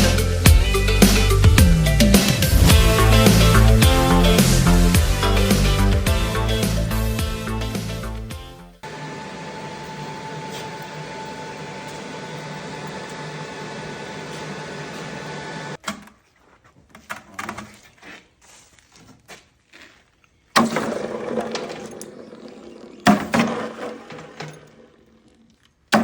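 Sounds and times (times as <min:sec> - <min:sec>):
machine humming: 0:00.0 - 0:15.8
loud sharp noise: 0:02.1 - 0:08.2.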